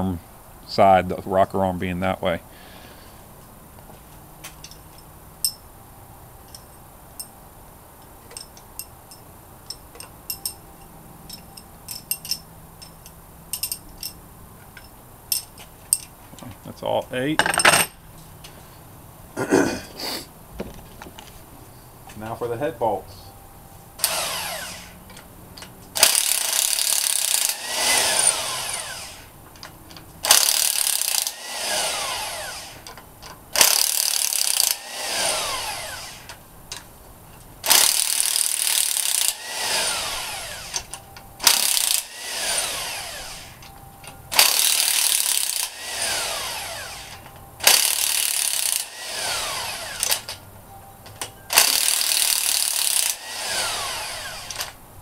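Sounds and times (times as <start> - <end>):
power tool whining in bursts: 24.0 - 25.1, 26.0 - 29.4, 30.2 - 36.4, 37.6 - 50.4, 51.5 - 54.8.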